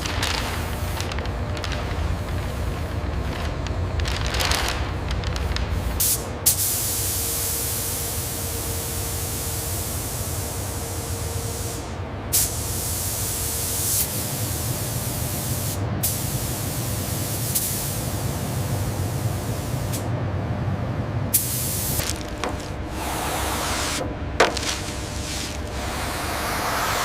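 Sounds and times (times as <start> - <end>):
steady spray hiss: 5.7 - 10.8, 11.4 - 18.3, 21.3 - 27.0.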